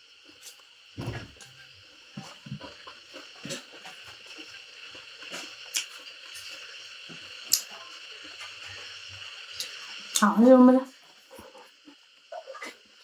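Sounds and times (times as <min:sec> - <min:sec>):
person chewing: 0:05.2 - 0:06.6.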